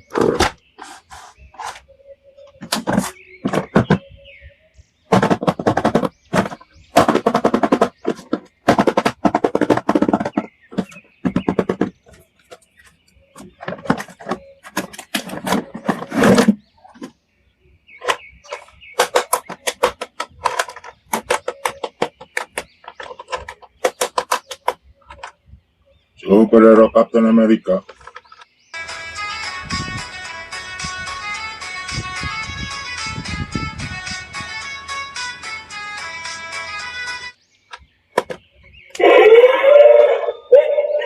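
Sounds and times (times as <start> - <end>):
plastic toys clicking and rattling: 5.1 - 17.1, 18.0 - 25.4, 27.7 - 28.5, 37.7 - 38.4.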